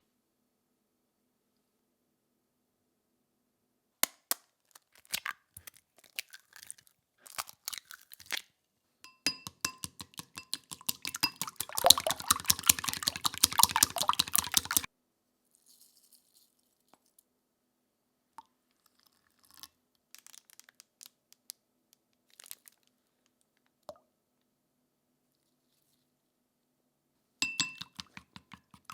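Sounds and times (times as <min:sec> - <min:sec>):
eggs cracking: 0:04.0 - 0:08.4, 0:09.3 - 0:14.9, 0:27.4 - 0:28.9
chopsticks beating in glass bowl: 0:09.1 - 0:14.9, 0:27.4 - 0:28.9.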